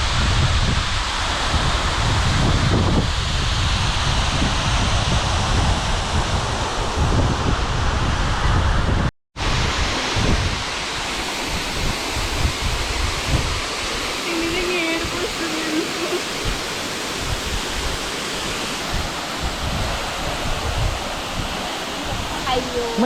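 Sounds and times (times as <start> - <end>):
wind buffeting microphone: 0.0 - 23.0
waterfall rushing: 9.4 - 23.0.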